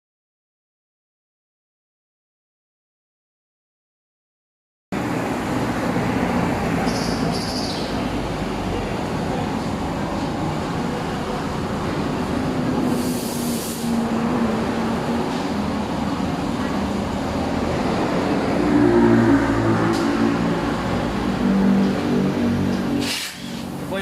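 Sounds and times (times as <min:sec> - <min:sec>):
brief hiss: 0:12.9 - 0:14.0, 0:23.0 - 0:23.7.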